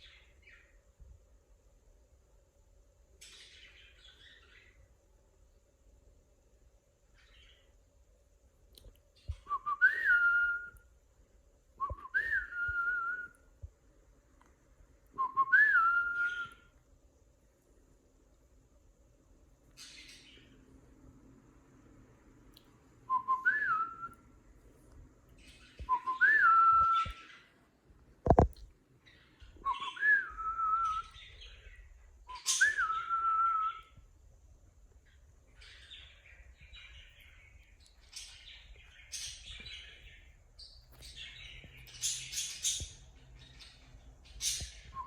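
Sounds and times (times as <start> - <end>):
cockatiel whistling: 15.2 - 16.6, 29.6 - 31.6, 32.3 - 34.0
scratchy bird chirps: 38.1 - 45.0.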